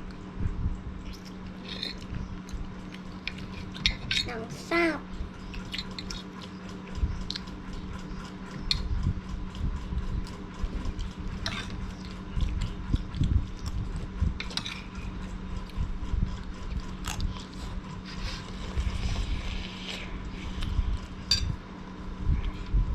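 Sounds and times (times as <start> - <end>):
steady low hum: 0.0 - 22.9
people chewing food: 1.0 - 22.9.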